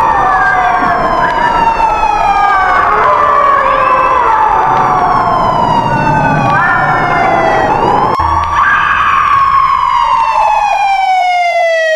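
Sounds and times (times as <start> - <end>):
sirens wailing: 0.0 - 11.9
low hum: 7.8 - 10.7.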